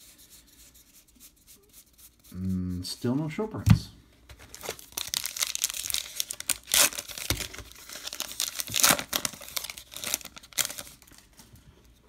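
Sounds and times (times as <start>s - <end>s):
wrapper tearing and crinkling: 4.4s - 11.4s.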